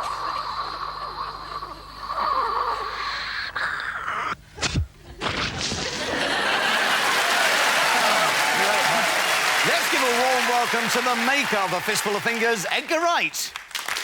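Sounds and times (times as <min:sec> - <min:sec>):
audience laughing: 0:05.8 - 0:12.2
audience applause: 0:06.0 - 0:14.0.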